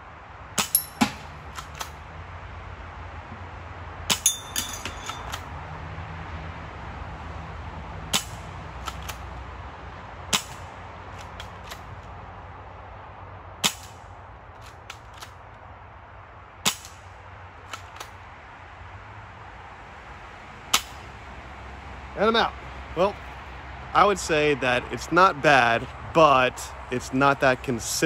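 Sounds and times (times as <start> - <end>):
air pistol shots snapping: 0.6 - 2.0, 8.1 - 9.2, 10.3 - 10.6, 13.6 - 14.0, 16.7 - 17.0.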